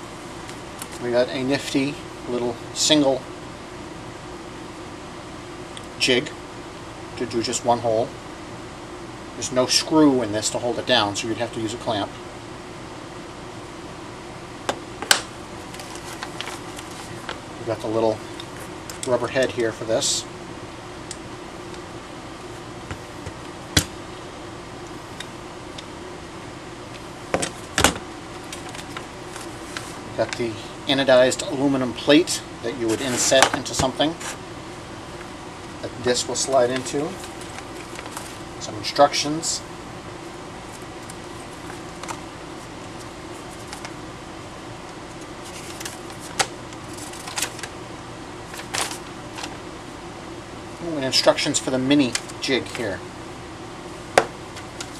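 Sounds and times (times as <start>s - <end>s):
steady low hum: 0.0s - 54.9s
paper rustling: 15.6s - 17.4s, 28.4s - 30.0s, 32.8s - 34.4s, 36.5s - 38.5s, 40.6s - 44.0s, 45.1s - 47.7s, 48.5s - 49.6s.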